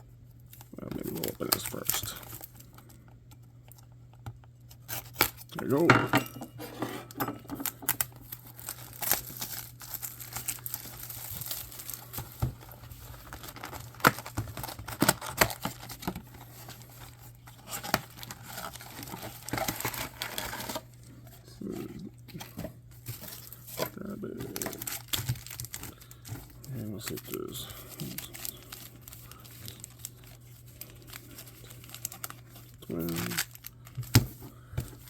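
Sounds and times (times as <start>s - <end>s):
plastic and paper crinkling: 0.4s - 4.0s, 7.6s - 35.0s.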